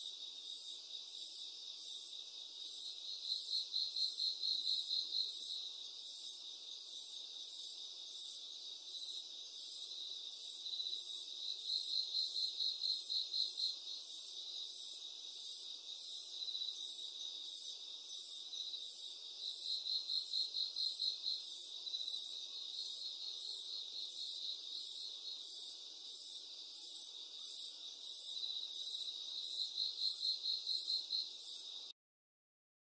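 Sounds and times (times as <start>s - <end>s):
crickets chirping: 0.0s - 31.9s.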